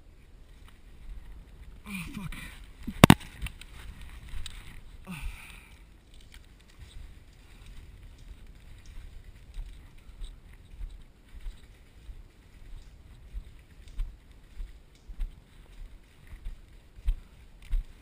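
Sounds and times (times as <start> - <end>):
wind and movement rumble: 0.0 - 18.0
light clicks: 5.4 - 11.7, 14.9 - 15.9.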